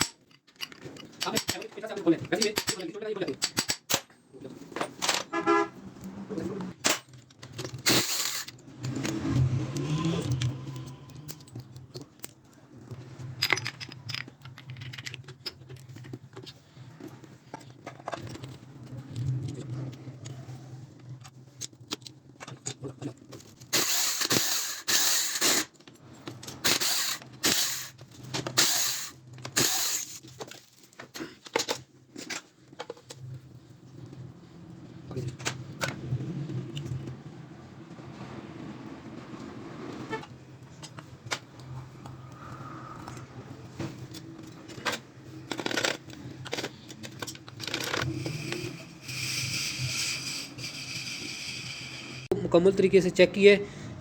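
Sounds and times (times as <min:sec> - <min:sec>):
metal parts clinking: 0:00.0 - 0:04.1, 0:06.8 - 0:09.4, 0:10.1 - 0:16.5, 0:44.5 - 0:51.8
traffic noise: 0:00.0 - 0:31.2, 0:32.2 - 0:54.0.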